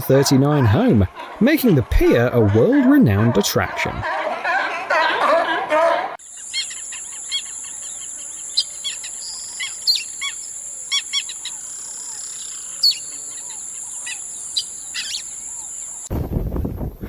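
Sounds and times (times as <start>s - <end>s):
birds chirping: 6.2s - 16.1s
high-pitched insect drone: 6.2s - 16.1s.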